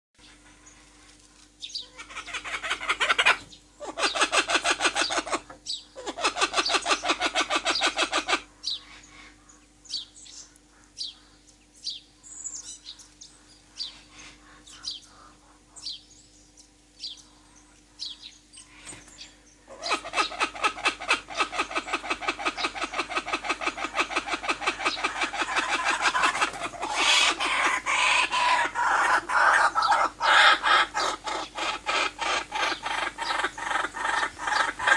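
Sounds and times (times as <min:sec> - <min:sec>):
continuous rapid bird trill: 0:00.2 - 0:34.9
bird rattling trills: 0:18.6 - 0:34.9.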